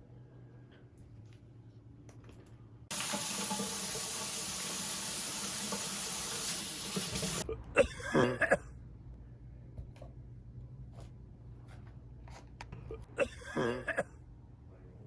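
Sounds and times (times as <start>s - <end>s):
water running from a tap: 2.9s - 7.4s
person coughing: 7.4s - 8.7s, 12.9s - 14.2s.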